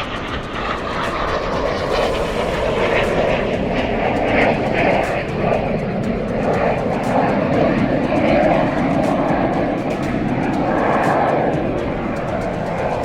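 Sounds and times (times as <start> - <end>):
jet engines roaring: 0.0 - 13.0.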